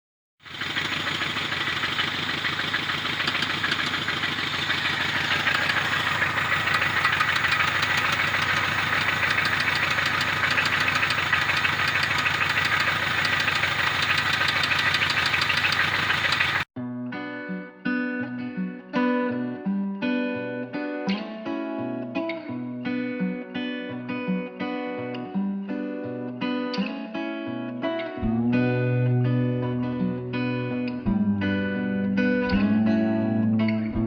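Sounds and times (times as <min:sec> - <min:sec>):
car engine knocking: 0:00.5 - 0:16.7.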